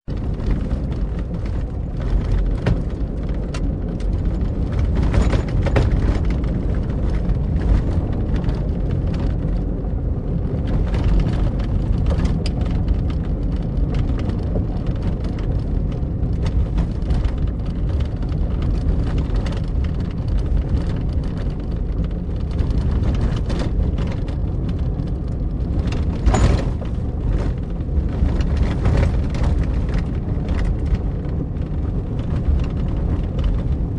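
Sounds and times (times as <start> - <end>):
car road rumble: 0.0 - 33.9
knocks and rattles: 0.1 - 33.9
car jolt: 25.7 - 30.0.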